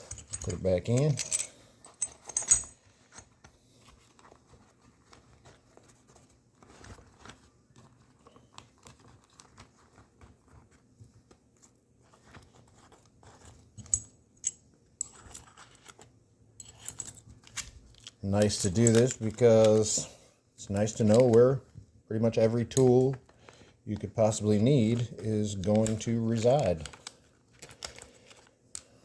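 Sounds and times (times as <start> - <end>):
metal tools clinking: 0.0 - 3.3, 18.3 - 20.1
tool bag rustling: 0.0 - 7.4.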